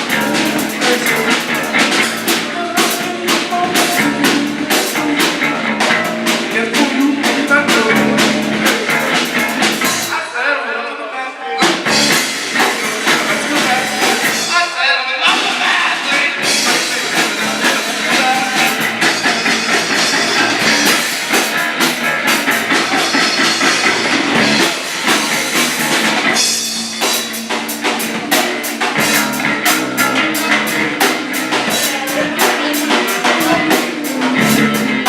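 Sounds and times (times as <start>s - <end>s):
drum beat: 0.0s - 10.1s, 11.7s - 14.6s, 15.3s - 35.0s.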